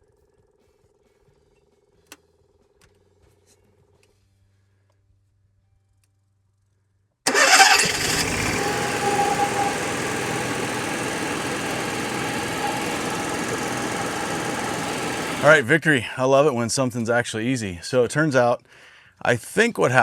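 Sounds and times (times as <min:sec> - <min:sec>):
generator cranking and running: 0:07.3 - 0:15.6.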